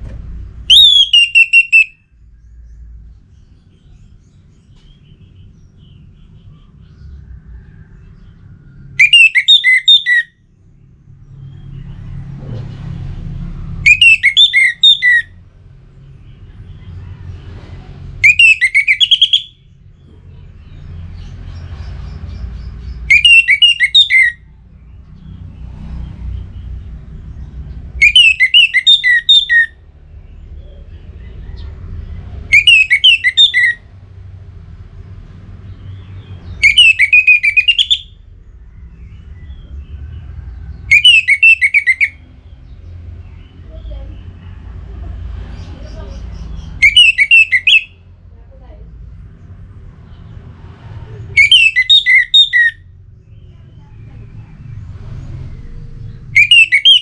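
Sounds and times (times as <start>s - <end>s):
thrush whistled song: 0.5s - 2.3s, 8.8s - 10.4s, 13.8s - 15.4s, 18.2s - 19.7s, 23.0s - 24.5s, 28.0s - 29.8s, 32.4s - 33.8s, 36.0s - 39.7s, 40.6s - 42.8s, 46.6s - 48.0s, 51.4s - 52.9s, 56.2s - 57.0s.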